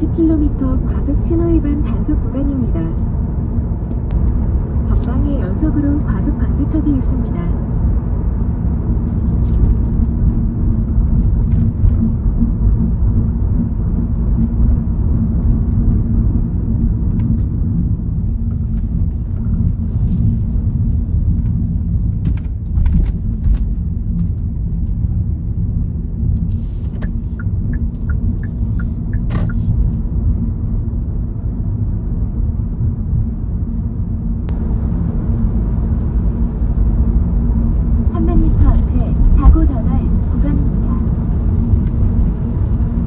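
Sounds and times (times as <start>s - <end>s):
car road and engine rumble: 0.0s - 43.0s.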